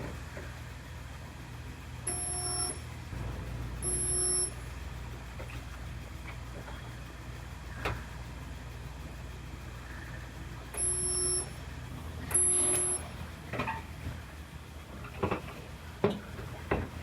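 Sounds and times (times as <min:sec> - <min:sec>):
welding buzz: 0:02.1 - 0:05.1, 0:12.2 - 0:13.2.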